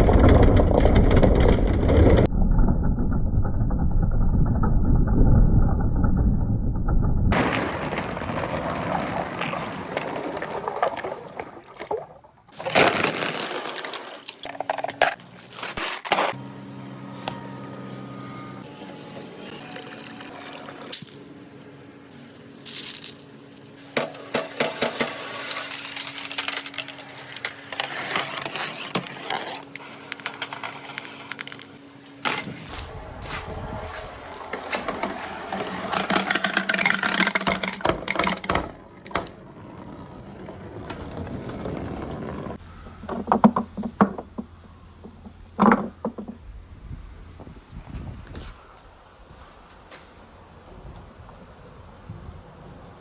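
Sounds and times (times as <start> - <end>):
glass marbles rolling and clattering: 7.3 - 11.0, 12.5 - 15.9, 19.5 - 21.3, 22.6 - 32.7
steady low hum: 14.4 - 24.6.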